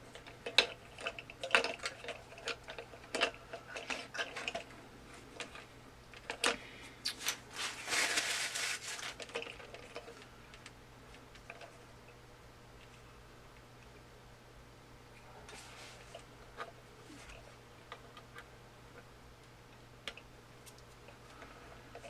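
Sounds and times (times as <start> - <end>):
plastic parts clicking and knocking: 0.1 - 4.7
plastic parts rubbing: 6.3 - 10.0.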